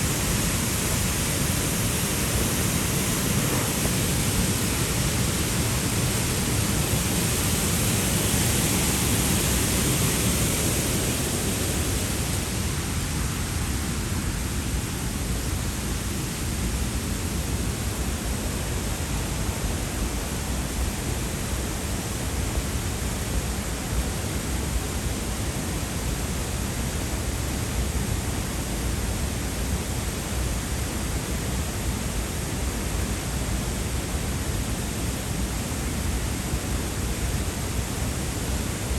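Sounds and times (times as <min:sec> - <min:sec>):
waterfall roaring: 0:00.0 - 0:14.7.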